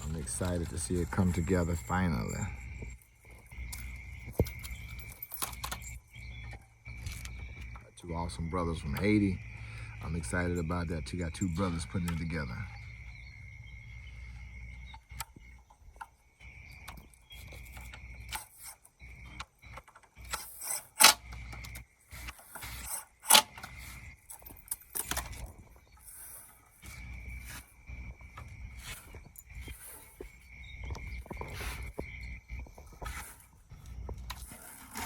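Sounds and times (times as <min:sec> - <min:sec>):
metal parts clinking and knocking: 0:00.0 - 0:07.8, 0:16.9 - 0:27.4
high insect drone: 0:00.0 - 0:35.0.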